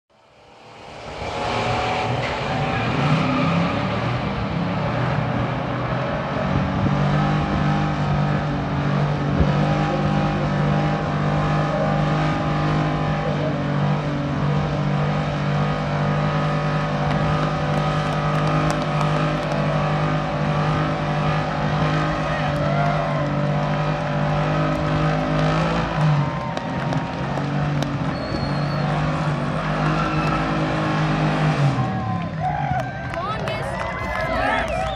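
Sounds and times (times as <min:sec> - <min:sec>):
car engine at high revs: 0:00.1 - 0:34.9
tyres spinning on pavement: 0:14.2 - 0:34.9.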